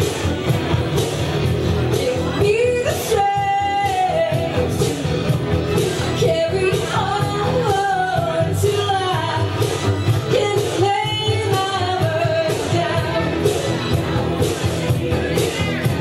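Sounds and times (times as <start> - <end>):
karaoke backing track: 0.0 - 16.0
woman singing: 1.9 - 4.9, 6.2 - 13.5.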